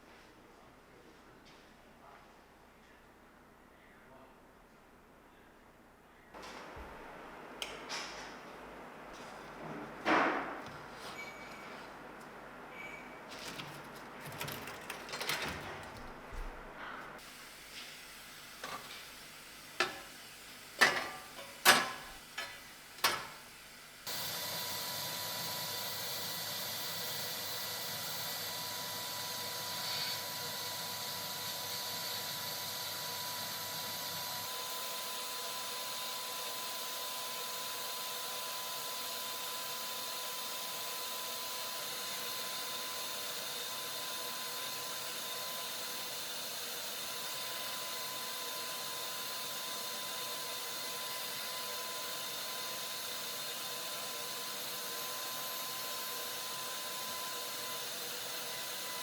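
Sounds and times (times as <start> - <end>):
hissing whirring workshop machine: 13.4 - 59.0
clicks and knocks from handling tools: 19.8 - 20.1, 20.8 - 23.4.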